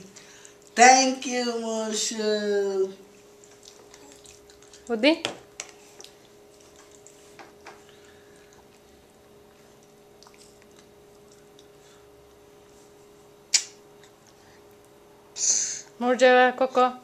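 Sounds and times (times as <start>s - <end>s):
steady low hum: 0.0s - 17.0s
person chewing: 3.1s - 4.9s, 5.6s - 12.3s.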